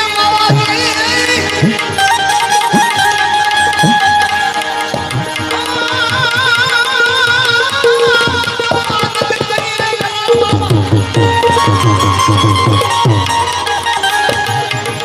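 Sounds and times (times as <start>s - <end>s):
sustained melodic instrument: 0.0s - 15.0s
tabla drumming: 0.0s - 15.0s.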